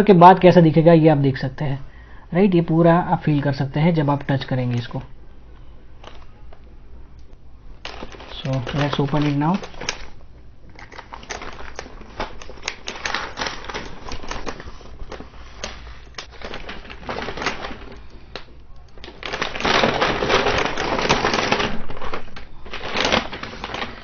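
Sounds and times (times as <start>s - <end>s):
packaging rustling: 7.8s - 24.0s.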